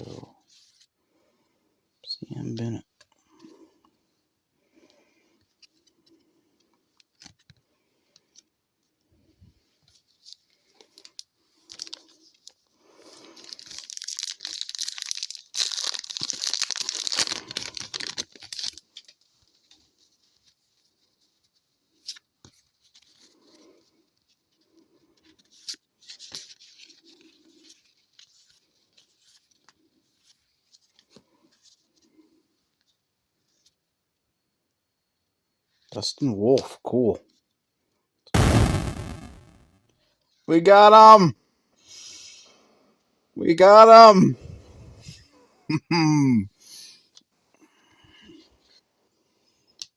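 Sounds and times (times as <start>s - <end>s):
wrapper tearing and crinkling: 13.4s - 18.8s.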